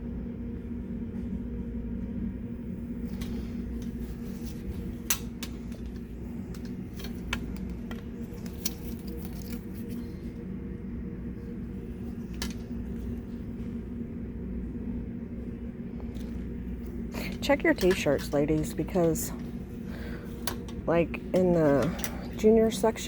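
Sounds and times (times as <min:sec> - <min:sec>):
low hum: 0:00.0 - 0:23.0
hangers clicking on metal rack: 0:05.0 - 0:09.7, 0:17.2 - 0:19.4, 0:20.4 - 0:22.8.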